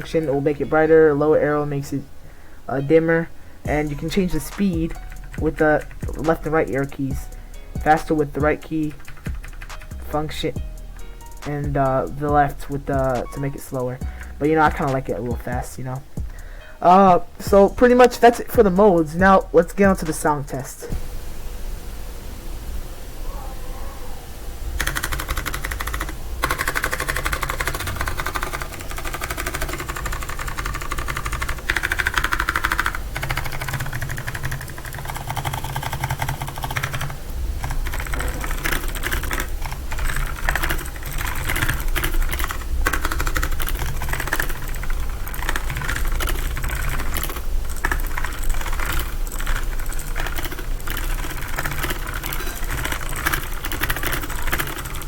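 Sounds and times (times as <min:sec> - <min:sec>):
clicky mechanical keyboard typing: 0:03.8 - 0:10.4, 0:11.2 - 0:16.4, 0:24.8 - 0:55.0.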